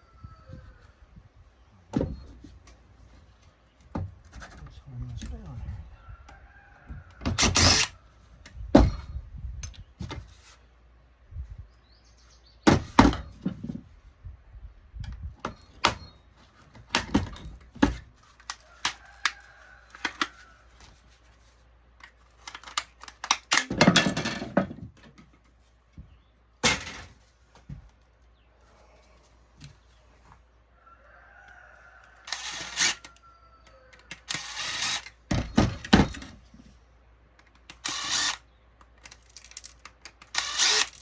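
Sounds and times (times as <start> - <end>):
metal and plastic parts clattering: 22.0 - 25.4, 26.6 - 27.2.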